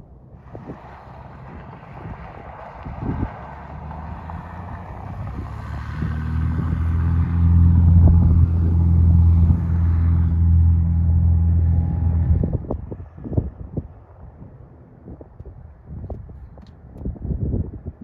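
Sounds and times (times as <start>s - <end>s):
propeller aircraft engine running: 4.0s - 14.3s.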